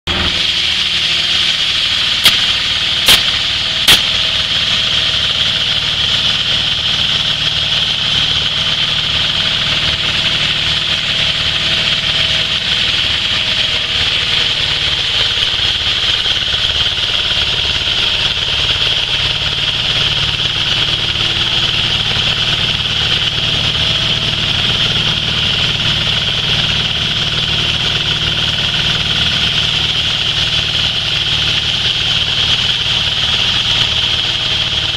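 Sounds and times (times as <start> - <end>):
hammer mill running: 0.1 - 34.9
sharp knocks: 2.2 - 4.4.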